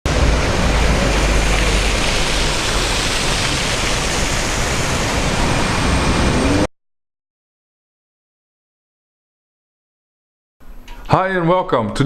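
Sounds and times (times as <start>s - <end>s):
heavy rain hissing: 0.1s - 6.7s
low rumble: 0.1s - 6.7s.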